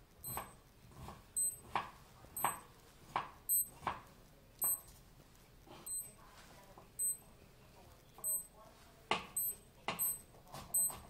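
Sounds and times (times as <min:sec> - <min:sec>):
digital watch beeping: 0:00.2 - 0:00.6, 0:01.4 - 0:01.6, 0:02.4 - 0:02.6, 0:03.5 - 0:03.7, 0:04.6 - 0:04.9, 0:05.9 - 0:06.2, 0:07.0 - 0:07.2, 0:08.2 - 0:08.6, 0:09.4 - 0:11.0.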